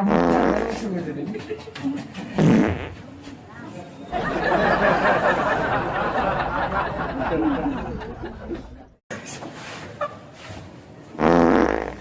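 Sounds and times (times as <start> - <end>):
people laughing and giggling: 0.9 - 2.4, 4.1 - 9.0.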